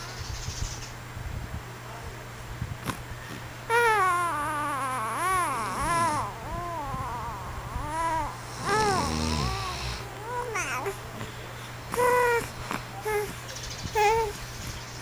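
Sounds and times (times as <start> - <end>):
baby cooing and babbling: 3.7 - 11.2, 11.9 - 14.4
man snoring: 5.1 - 10.4.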